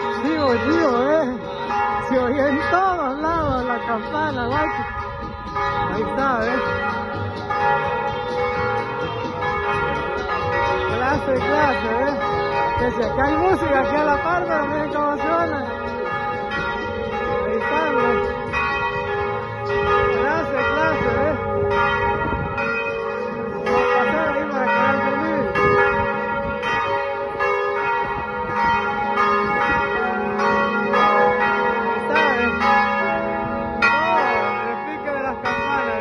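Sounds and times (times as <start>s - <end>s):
church bells ringing: 0.0s - 36.0s.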